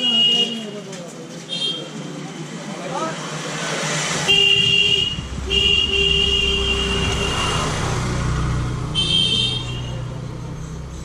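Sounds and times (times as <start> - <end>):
road traffic rumble: 0.0 - 11.0
vehicle horn honking: 4.3 - 7.8, 8.9 - 10.1.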